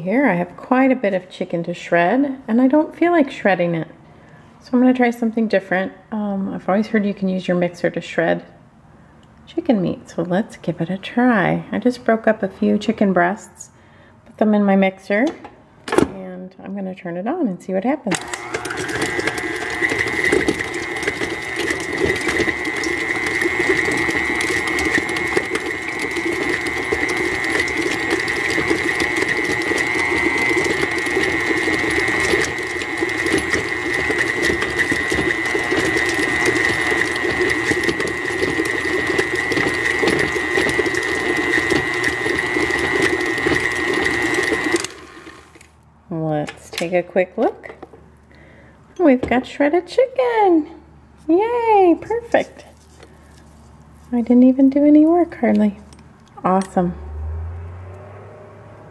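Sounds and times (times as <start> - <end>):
stand mixer whining: 18.1 - 45.7.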